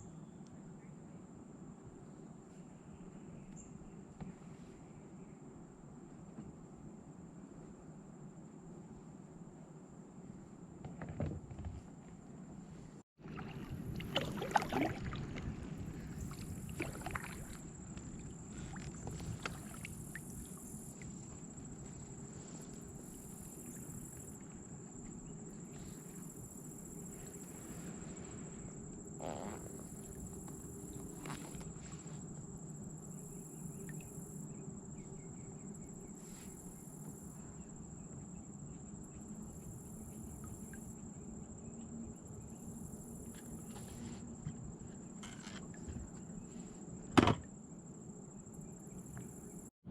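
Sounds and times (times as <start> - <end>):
paddle strokes: 13.2 - 32.4, 43.3 - 47.3
water noise: 13.2 - 34.4
insects calling in pulses: 15.8 - 49.7.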